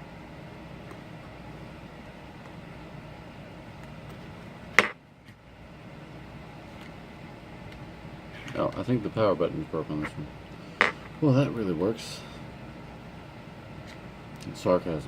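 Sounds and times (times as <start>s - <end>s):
steady background hiss: 0.0s - 15.0s.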